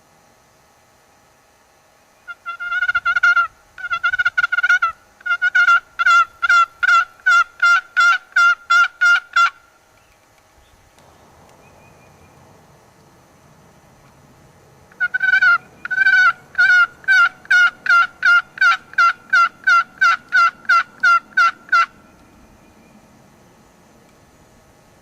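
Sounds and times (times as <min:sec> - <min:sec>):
turkey call yelps: 0:02.3 - 0:09.6, 0:14.9 - 0:22.0.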